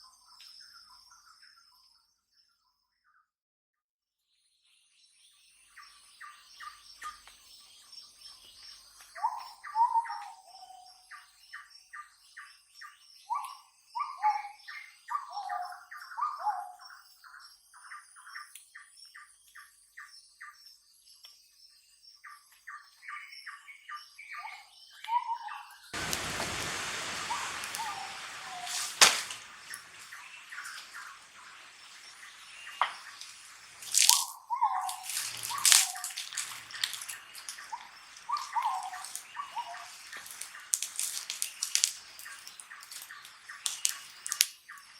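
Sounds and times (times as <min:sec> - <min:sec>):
forest birds calling: 0:05.0 - 0:44.9
loud steady rushing noise: 0:26.0 - 0:33.8.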